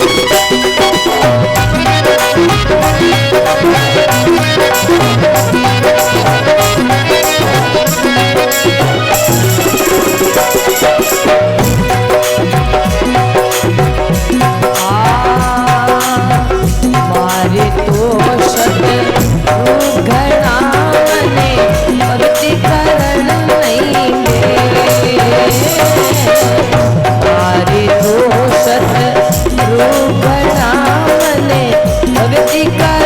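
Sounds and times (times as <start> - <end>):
wavering melody: 0.0 - 14.5, 21.2 - 28.1
hand drum beat: 0.0 - 33.0
jingling rattle percussion: 0.0 - 33.0.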